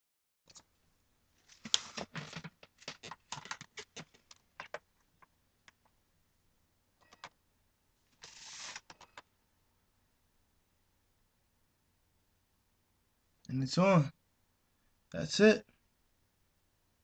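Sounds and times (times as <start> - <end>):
scraping slide: 8.2 - 9.0.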